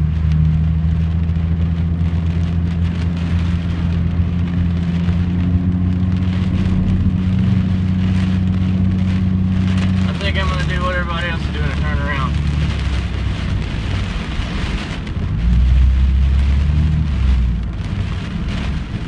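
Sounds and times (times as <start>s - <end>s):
engine and road drone: 0.0s - 19.0s
rain pelting a car: 0.0s - 19.0s.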